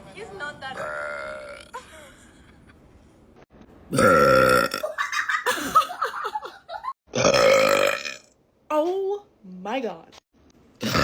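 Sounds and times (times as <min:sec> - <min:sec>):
person burping: 0:00.8 - 0:01.8, 0:03.9 - 0:05.0, 0:07.1 - 0:08.4, 0:10.8 - 0:11.0.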